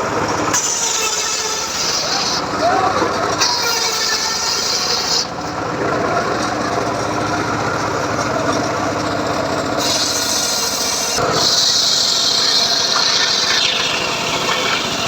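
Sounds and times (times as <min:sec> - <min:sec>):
circular saw running: 0:00.0 - 0:15.0
high saw blade hiss: 0:00.5 - 0:02.5, 0:09.8 - 0:15.0.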